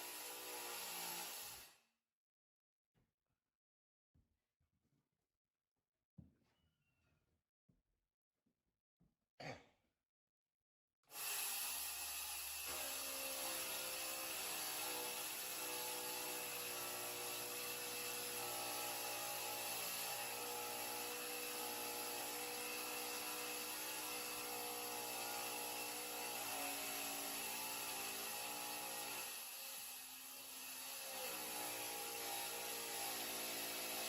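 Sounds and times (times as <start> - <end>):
electric power tool motor: 0.0 - 1.7, 11.1 - 34.0.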